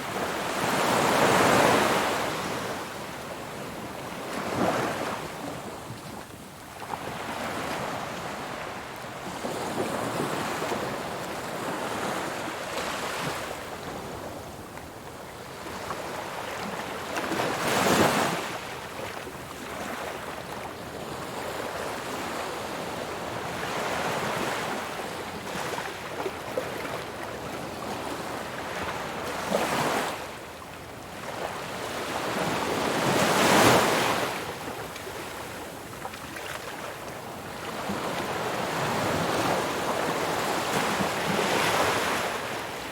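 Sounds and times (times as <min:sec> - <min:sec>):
ocean waves breaking on shore: 0:31.2 - 0:42.9.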